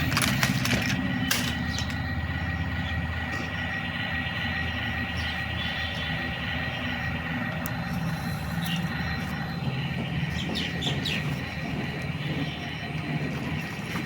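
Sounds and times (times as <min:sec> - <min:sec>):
toy excavator motors whirring: 0:00.0 - 0:02.0.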